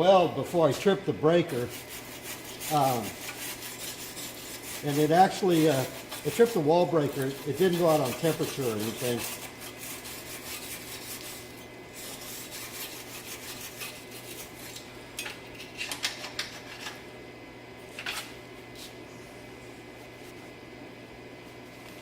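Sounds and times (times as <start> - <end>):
steady low hum: 0.0 - 22.0
hard objects scraping and rubbing: 1.5 - 14.7.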